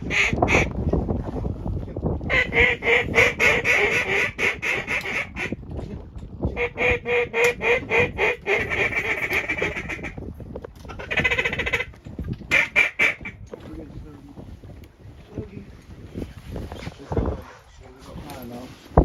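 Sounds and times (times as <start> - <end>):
duck quacking: 0.1 - 0.7, 2.3 - 5.5, 6.6 - 10.2, 11.0 - 11.9, 12.5 - 13.3.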